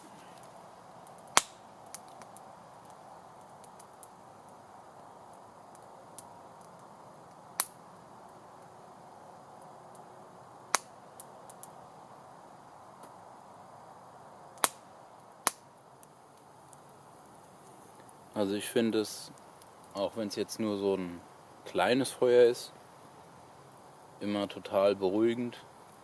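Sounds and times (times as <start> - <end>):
burning wood pops: 0.0 - 8.7, 10.7 - 11.8, 13.0 - 13.2, 14.5 - 21.8
campfire crackling: 0.0 - 26.0.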